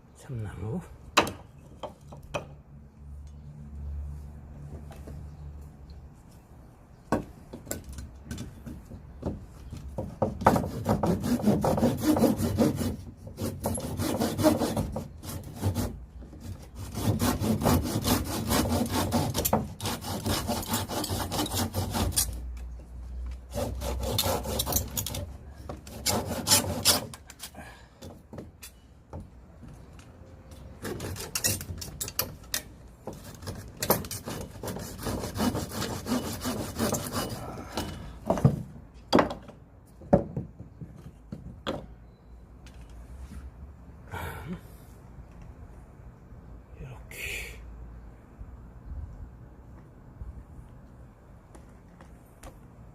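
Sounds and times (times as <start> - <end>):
hand saw cutting wood: 10.4 - 22.5, 23.4 - 27.4, 30.8 - 31.7, 33.1 - 37.9.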